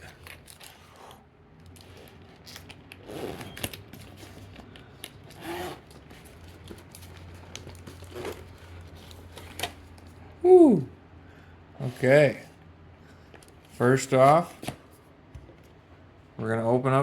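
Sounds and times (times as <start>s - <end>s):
zipper being pulled: 1.8s - 4.4s, 5.3s - 6.0s, 8.0s - 8.5s
bag rubbing and scraping: 5.3s - 6.6s, 8.0s - 9.1s.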